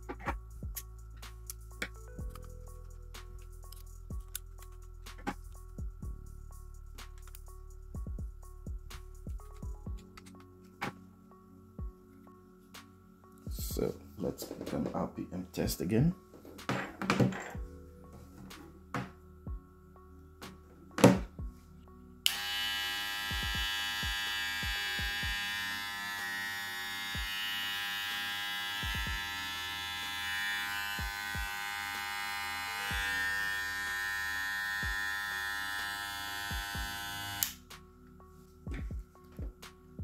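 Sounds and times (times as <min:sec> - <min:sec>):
hair clipper buzzing: 0:22.2 - 0:37.6.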